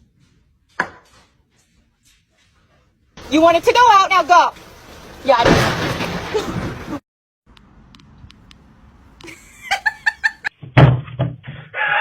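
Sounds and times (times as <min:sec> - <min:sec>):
loud thud: 0:05.4 - 0:07.0
person laughing: 0:09.2 - 0:10.5.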